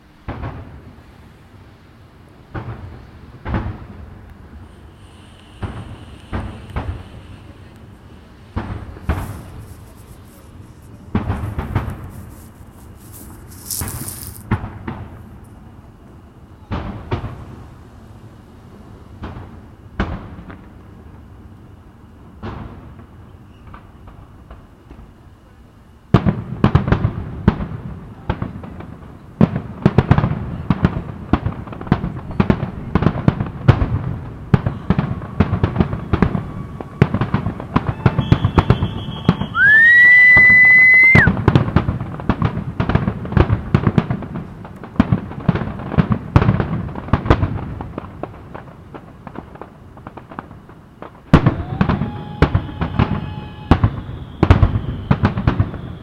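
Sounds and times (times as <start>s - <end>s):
firework booms and crackles: 0.0s - 56.0s
firework whistle rising: 8.2s - 14.5s, 34.5s - 41.4s, 51.4s - 56.0s.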